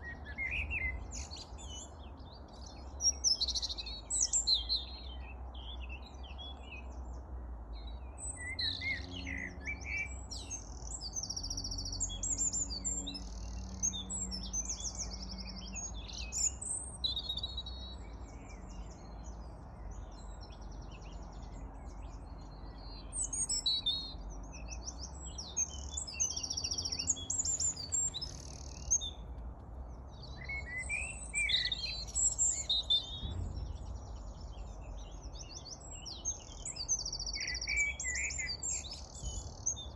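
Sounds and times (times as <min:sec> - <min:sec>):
songbirds chirping and trilling: 0:00.0 - 0:39.9
steady low rumble: 0:33.0 - 0:35.4.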